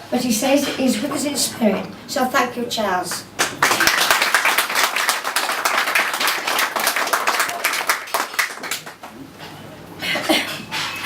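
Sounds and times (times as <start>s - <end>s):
audience clapping: 3.1s - 9.2s.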